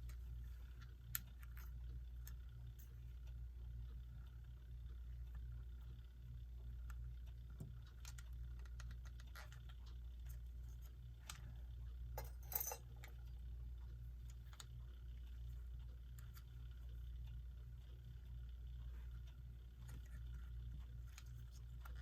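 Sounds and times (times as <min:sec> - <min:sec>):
low steady hum: 0:00.0 - 0:22.0
small metal clicks and taps: 0:06.8 - 0:11.5.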